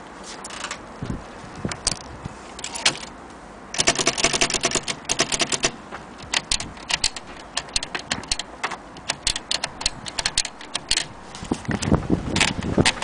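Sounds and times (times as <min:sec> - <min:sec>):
typewriter key strikes: 0:03.8 - 0:11.2.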